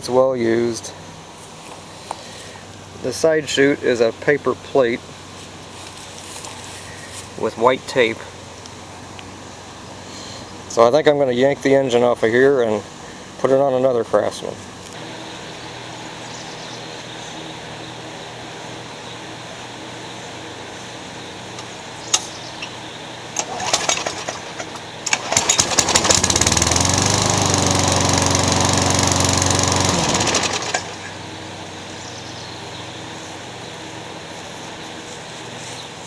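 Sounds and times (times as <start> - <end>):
lawn mower engine running: 21.4 - 34.4
recoil starter pulls: 23.3 - 31.2.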